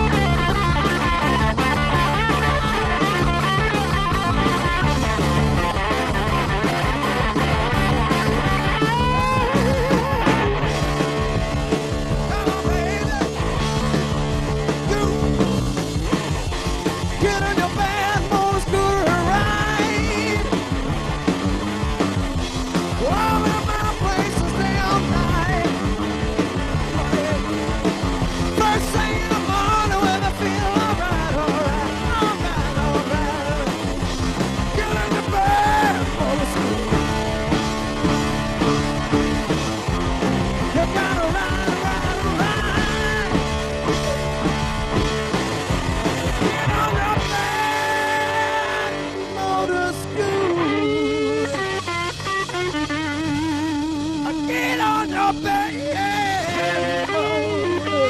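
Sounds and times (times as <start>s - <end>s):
electric guitar: 0.0s - 58.0s
rock music: 0.0s - 58.0s
steady drum beat: 0.0s - 58.0s
person singing: 12.1s - 13.4s, 14.7s - 15.6s, 17.1s - 20.7s, 22.9s - 25.9s, 26.8s - 27.8s, 28.5s - 34.0s, 34.6s - 37.4s, 40.6s - 44.3s, 46.2s - 58.0s.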